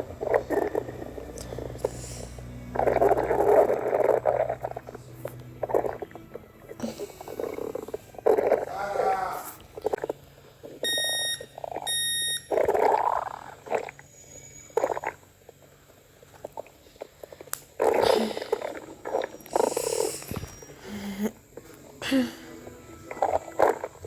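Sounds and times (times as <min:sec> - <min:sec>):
electronic growl bursts: 0:00.0 - 0:10.0
electronic toy beeps: 0:10.8 - 0:12.6.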